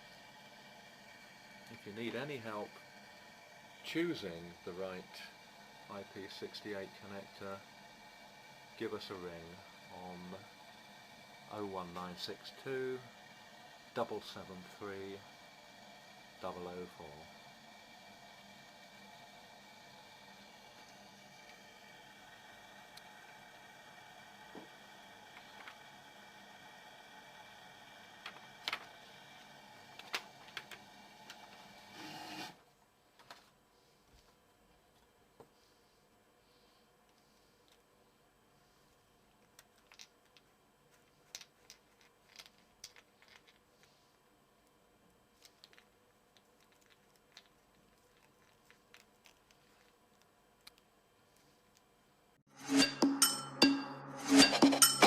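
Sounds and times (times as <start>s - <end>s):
steady low hum: 0.0s - 31.3s.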